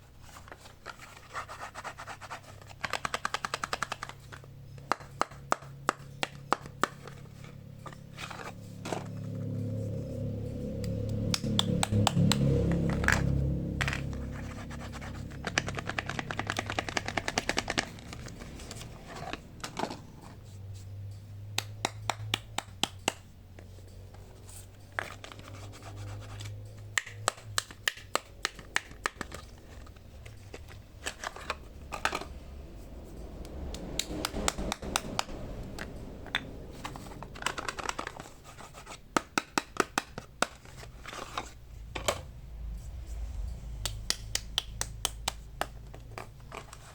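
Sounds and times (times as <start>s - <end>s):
sharp clicks and taps: 43.8s - 46.3s.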